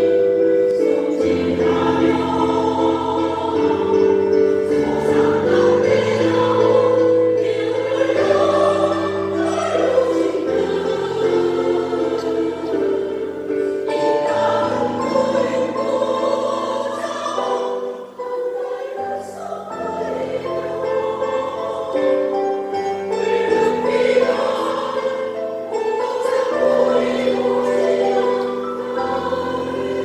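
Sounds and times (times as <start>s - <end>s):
choir singing in harmony: 0.0s - 30.0s.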